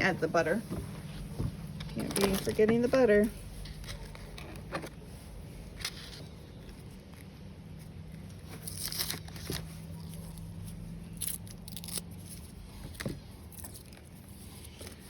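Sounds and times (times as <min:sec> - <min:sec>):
wrapping crinkling: 0:01.8 - 0:02.7, 0:05.7 - 0:12.8.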